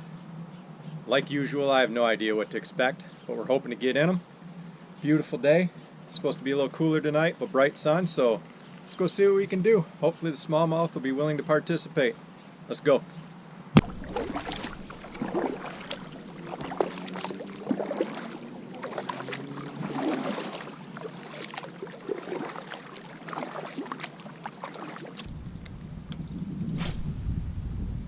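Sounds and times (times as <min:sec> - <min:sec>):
knocks on kayak hull: 0:13.8 - 0:16.0
paddle splashes: 0:13.8 - 0:25.3
wind rumble on microphone: 0:25.2 - 0:28.0.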